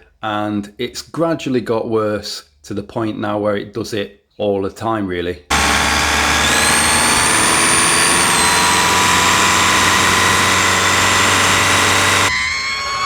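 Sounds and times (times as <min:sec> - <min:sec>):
car engine running: 0:05.5 - 0:12.3
high-pitched squealing whistle: 0:05.9 - 0:13.0.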